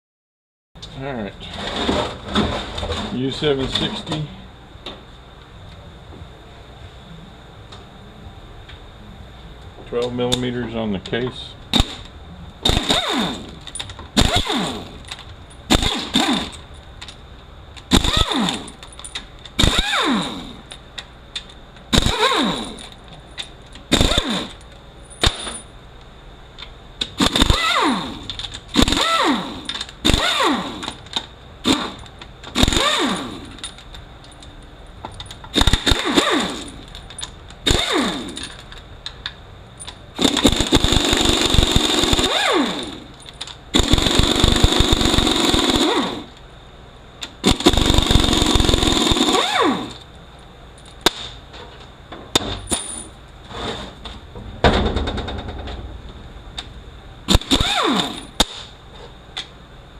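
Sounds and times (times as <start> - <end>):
power ratchet spinning bolt: 27.2 - 33.8, 47.4 - 50.0, 57.3 - 58.4.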